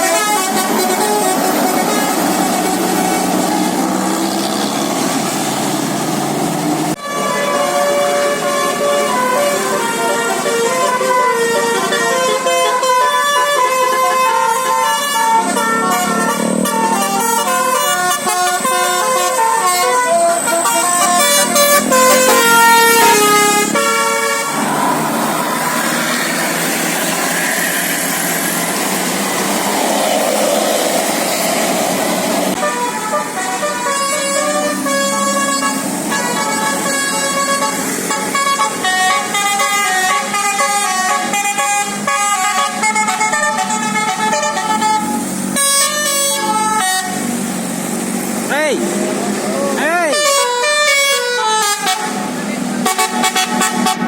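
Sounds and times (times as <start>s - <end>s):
multi-tone bus horn tune: 0.0s - 5.9s, 6.9s - 29.9s, 31.3s - 47.8s, 48.8s - 54.0s
rushing noise: 0.0s - 7.0s, 14.7s - 39.3s.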